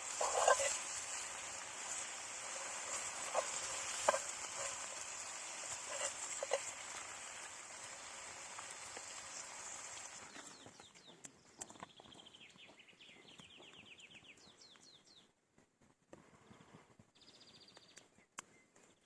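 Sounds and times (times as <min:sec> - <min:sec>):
meat sizzling: 0:00.0 - 0:10.6
songbird singing: 0:09.3 - 0:15.3.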